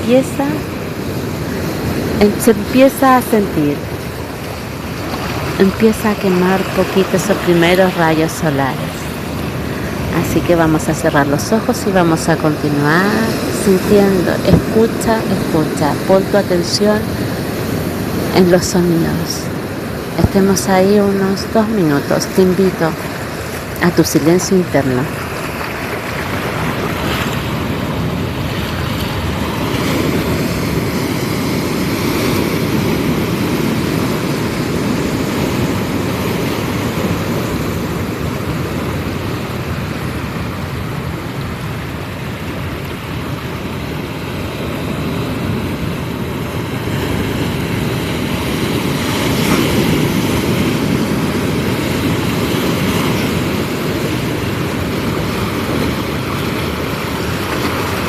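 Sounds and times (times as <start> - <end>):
ocean waves washing onto beach: 0.0 - 58.0.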